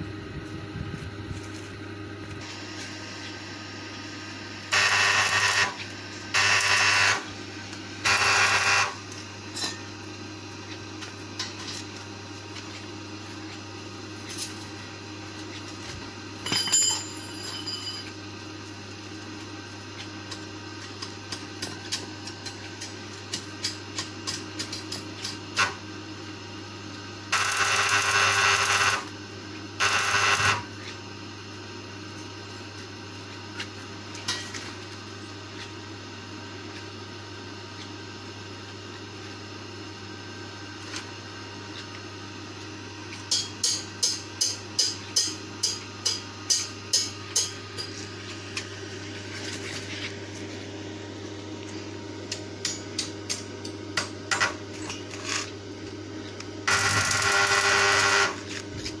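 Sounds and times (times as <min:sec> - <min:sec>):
steady low hum: 0:00.0 - 0:26.4
small power tool whirring: 0:56.7 - 0:58.6.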